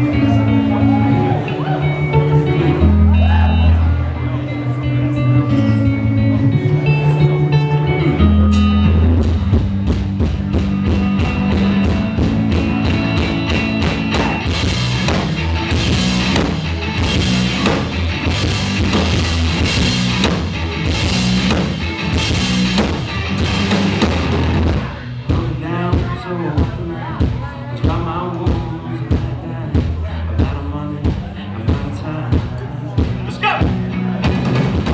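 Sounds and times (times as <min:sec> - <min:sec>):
distorted electric guitar riff: 0:00.0 - 0:27.2
drum kit playing: 0:07.5 - 0:34.9.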